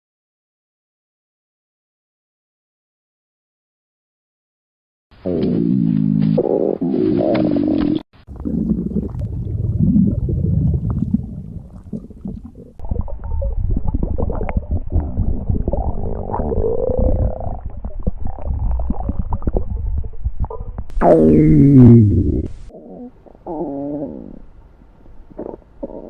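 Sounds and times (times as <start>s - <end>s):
stomach growling and gurgling: 5.3s - 26.0s.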